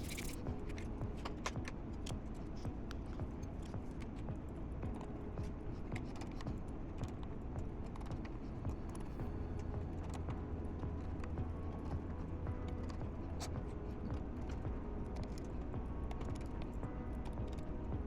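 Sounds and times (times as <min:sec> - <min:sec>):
small tools clicking and tapping: 0:00.0 - 0:00.4
low hum: 0:00.0 - 0:01.1, 0:08.7 - 0:18.0.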